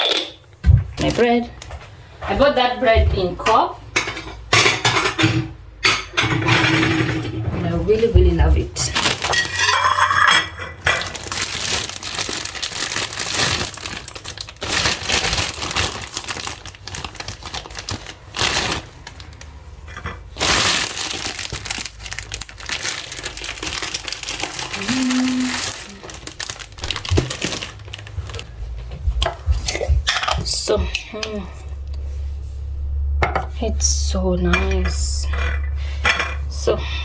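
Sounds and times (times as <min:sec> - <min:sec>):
plastic bag crinkling: 0:08.8 - 0:10.2, 0:10.8 - 0:28.8.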